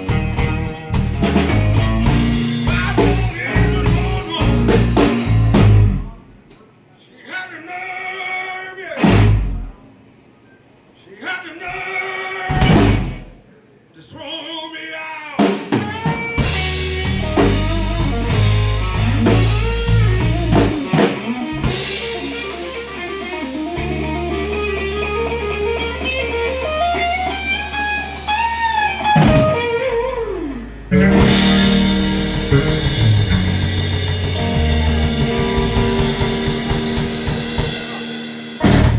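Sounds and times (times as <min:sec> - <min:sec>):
blues-rock band playing: 0:00.0 - 0:06.1, 0:09.0 - 0:09.7, 0:12.5 - 0:13.4, 0:15.5 - 0:38.9.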